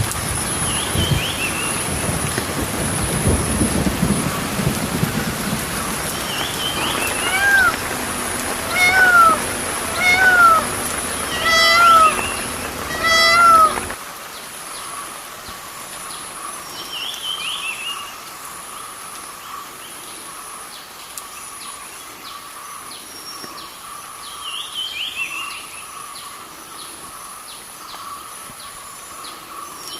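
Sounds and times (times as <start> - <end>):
small birds chirping: 6.0 - 14.0
steady high buzz: 6.1 - 14.0
peacock mewing call: 6.4 - 14.0.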